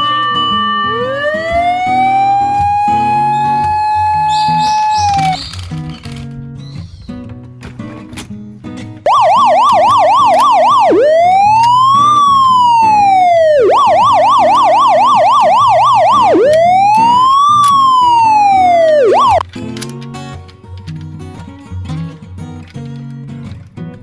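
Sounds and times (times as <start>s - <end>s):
electronic siren yelp and wail: 0.0s - 5.4s, 9.1s - 19.4s.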